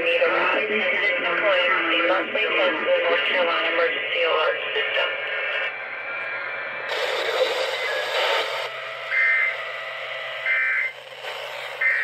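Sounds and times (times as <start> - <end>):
radio hiss: 0.0 - 12.0
buzzy warbling data bursts: 6.9 - 12.0.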